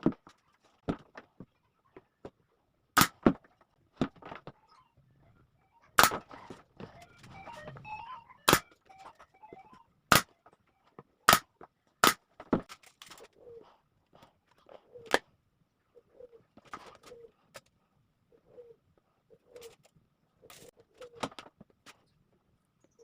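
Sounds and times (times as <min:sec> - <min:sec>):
pigeons cooing: 0:13.1 - 0:15.2, 0:15.9 - 0:17.5, 0:18.3 - 0:19.8, 0:20.4 - 0:21.3.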